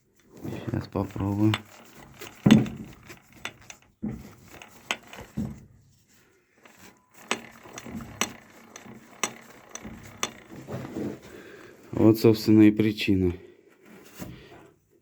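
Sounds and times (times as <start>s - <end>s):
metallic clicks of tools handled: 1.4s - 3.9s, 4.5s - 5.5s.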